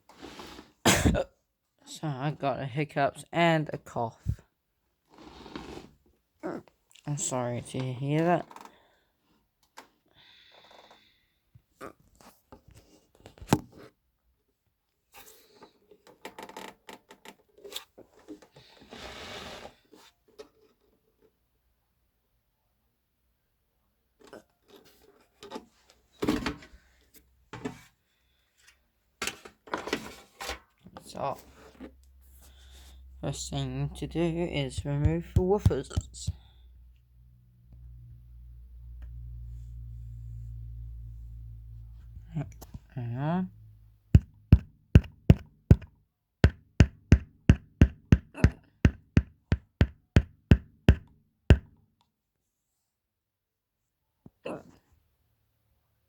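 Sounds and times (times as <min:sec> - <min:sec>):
hammering on wooden cabinet: 0:34.8 - 0:36.4, 0:44.2 - 0:51.7.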